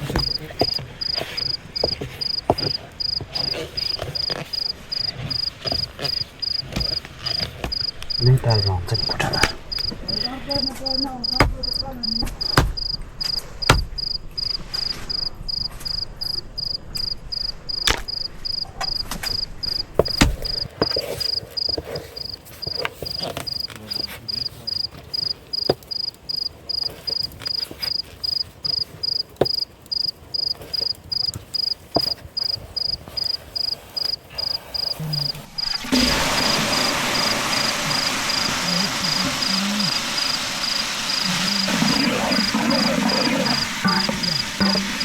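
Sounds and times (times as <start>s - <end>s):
cricket chirping: 0.0s - 45.0s
sharp knocks: 11.3s - 14.2s, 19.7s - 20.7s.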